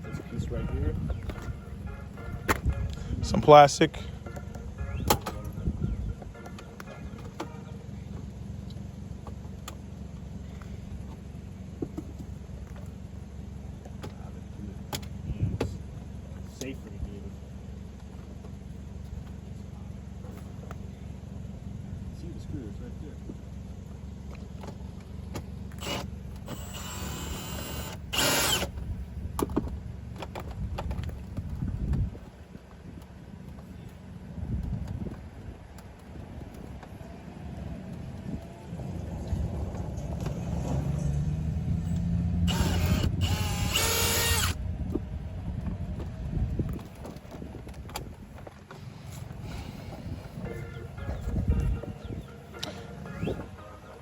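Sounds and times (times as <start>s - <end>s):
steady low hum: 0.0s - 54.0s
power drill motor whine: 25.7s - 28.9s, 41.9s - 44.6s.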